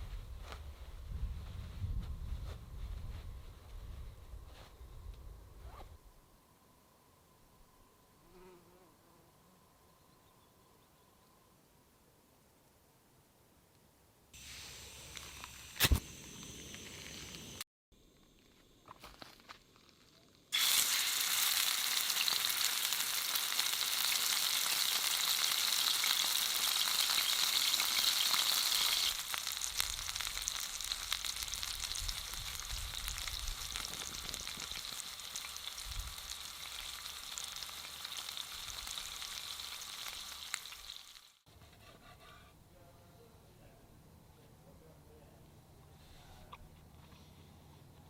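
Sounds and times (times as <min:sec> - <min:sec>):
sizzling crackle: 0:14.4 - 0:17.6, 0:20.4 - 0:41.5.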